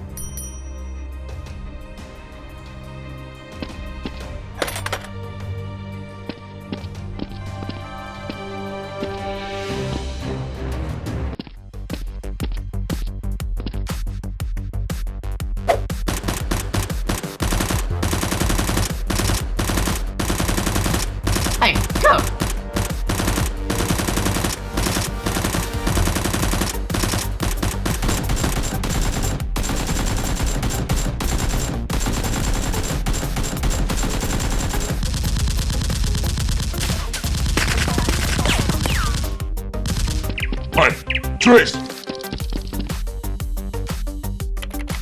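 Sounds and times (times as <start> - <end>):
automatic gunfire: 16.1 - 39.3.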